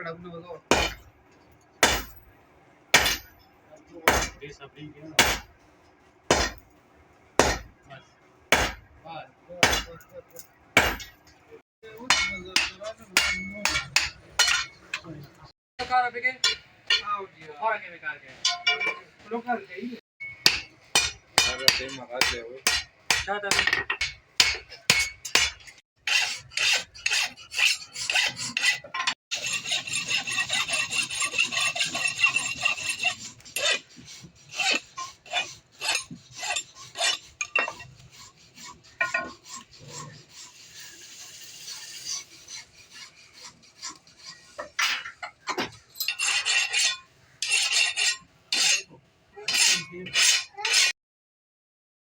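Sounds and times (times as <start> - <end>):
scraping metal: 20.3 - 50.9
file strokes on metal: 25.3 - 45.2, 46.0 - 48.9, 49.5 - 51.0.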